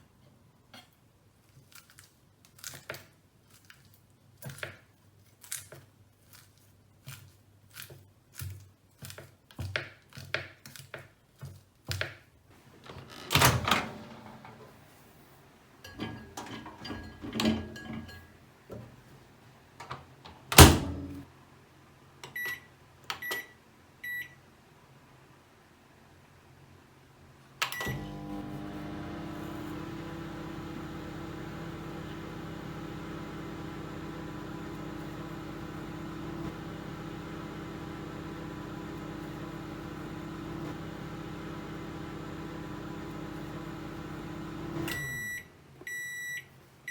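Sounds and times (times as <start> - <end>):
chillies being crushed: 1.5 - 12.3
microwave door opening and shutting: 12.7 - 14.8, 19.8 - 21.2, 27.6 - 45.2.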